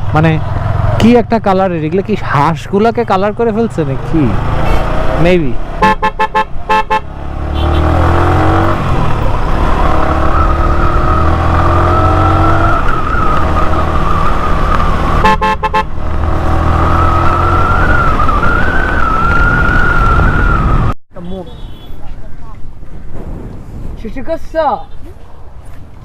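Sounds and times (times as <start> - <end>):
vehicle engine accelerating: 3.2 - 5.9, 6.6 - 21.0
short horn honks: 5.8 - 7.9.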